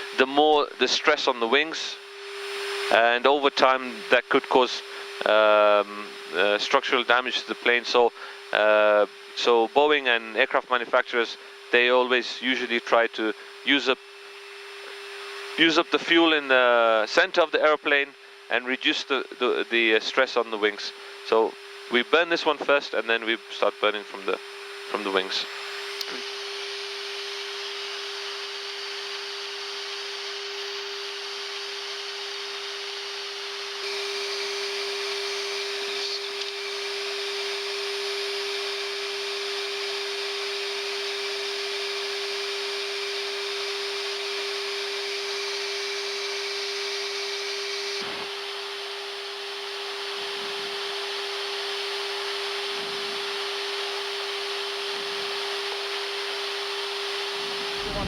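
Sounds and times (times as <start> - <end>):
constant hum: 0.0 - 17.9, 57.6 - 58.0
air rushing: 57.7 - 58.0.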